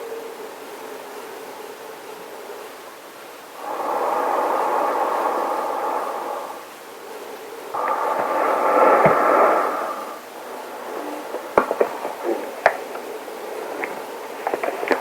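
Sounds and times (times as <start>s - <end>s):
breath through gas mask filter: 3.5s - 15.0s.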